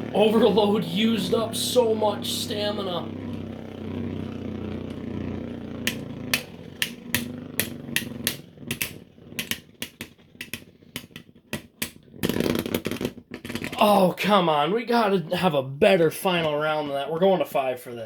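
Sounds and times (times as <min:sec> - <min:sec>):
spinning tops whirring: 0:00.0 - 0:13.8
spinning top clicking and clattering: 0:05.8 - 0:13.8.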